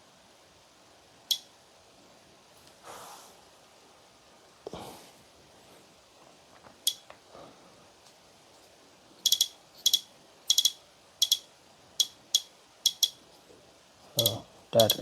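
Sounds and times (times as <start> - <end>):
camera beeping: 9.2 - 13.2.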